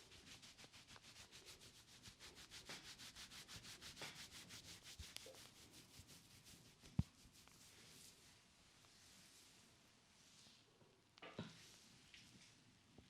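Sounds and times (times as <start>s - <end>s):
hands rubbing hair and scalp: 0.0s - 9.6s.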